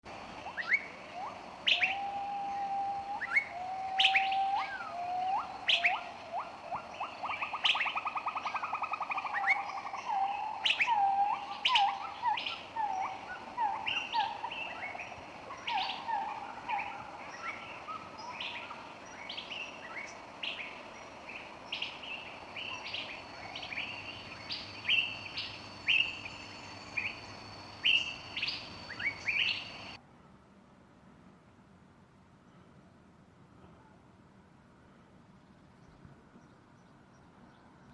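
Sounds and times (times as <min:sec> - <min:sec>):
lower whistled notes: 0:00.4 - 0:18.7, 0:21.8 - 0:30.0
bird chirping: 0:00.4 - 0:30.0.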